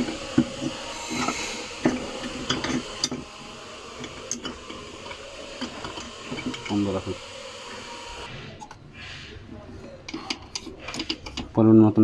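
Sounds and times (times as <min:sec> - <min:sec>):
metal parts clinking and tapping: 0:00.0 - 0:03.3, 0:04.0 - 0:06.8, 0:10.1 - 0:11.7.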